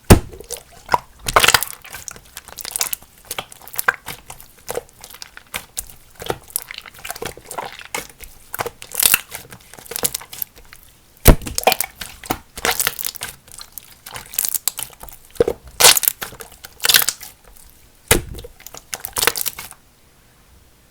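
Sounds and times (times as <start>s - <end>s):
slime squished by hand: 0.0s - 19.8s
air bubbles popping in slime: 11.3s - 13.4s, 18.1s - 19.7s.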